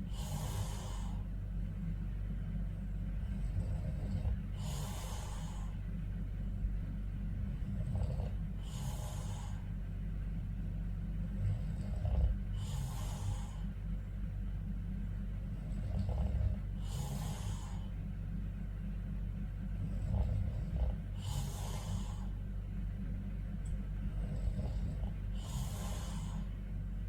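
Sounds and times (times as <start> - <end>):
man snoring: 0.0 - 1.2, 3.2 - 5.8, 7.5 - 9.7, 11.2 - 13.7, 15.4 - 17.9, 19.8 - 22.3, 24.0 - 26.5.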